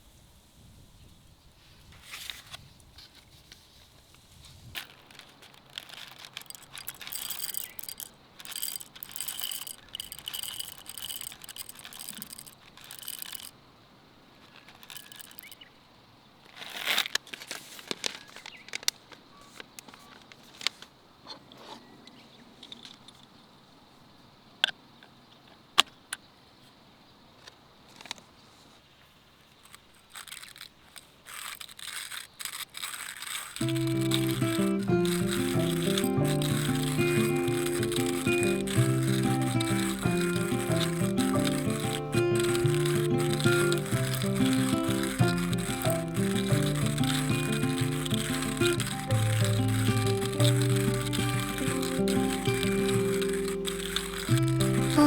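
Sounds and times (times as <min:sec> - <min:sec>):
small objects clinking and scraping: 0:04.6 - 0:13.5, 0:14.4 - 0:15.7, 0:29.5 - 0:55.0.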